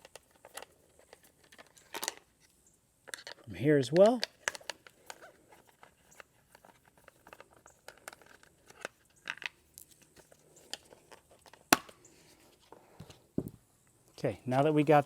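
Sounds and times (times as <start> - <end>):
plastic covers clicking and crackling: 0.0 - 2.3, 3.1 - 12.0.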